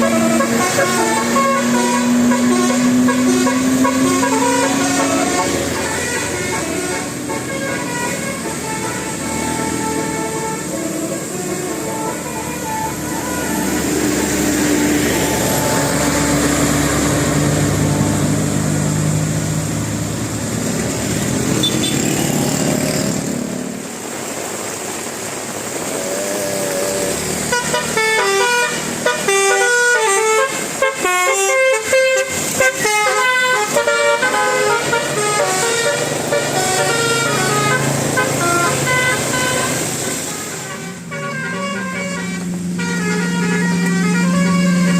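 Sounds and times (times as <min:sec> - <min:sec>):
held horn tones: 0:00.0 - 0:17.2, 0:27.5 - 0:44.9
air horn playing a melody: 0:00.0 - 0:18.1, 0:27.4 - 0:44.9
road noise: 0:00.0 - 0:44.9.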